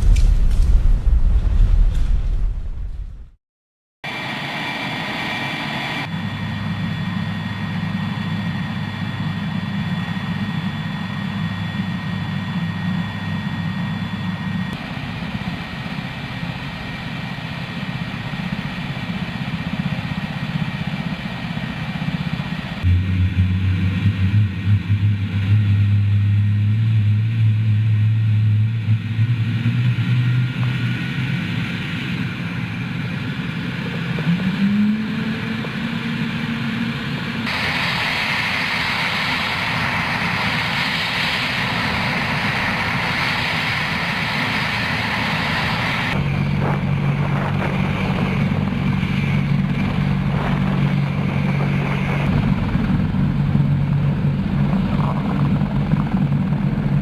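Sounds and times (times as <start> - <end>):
helicopter engine and rotor: 4.0 - 57.0
rising whine: 22.5 - 57.0
high hiss: 37.5 - 46.1.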